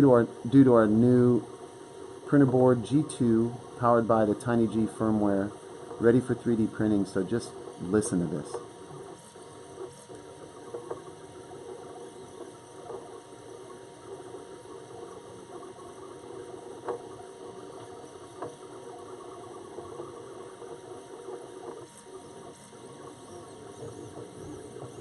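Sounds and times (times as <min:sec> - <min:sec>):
stepper motors humming: 0:00.0 - 0:25.0
faint ticks: 0:08.5 - 0:20.6.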